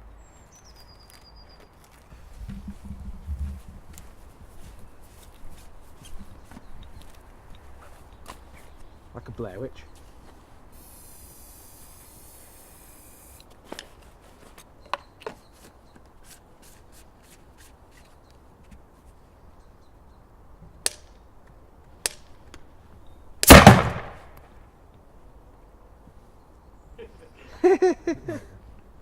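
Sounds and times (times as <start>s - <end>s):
short hiss: 10.7s - 13.4s
potato cannon firing bang: 23.4s - 24.4s.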